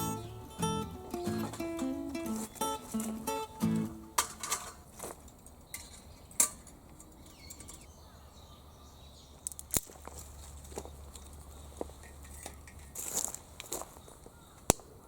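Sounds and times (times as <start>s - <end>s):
objects clicking and clinking: 4.2s - 4.8s.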